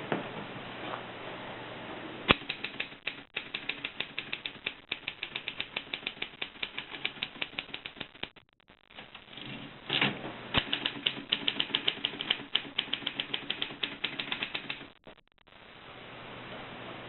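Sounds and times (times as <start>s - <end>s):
typewriter key strikes: 10.6s - 14.9s.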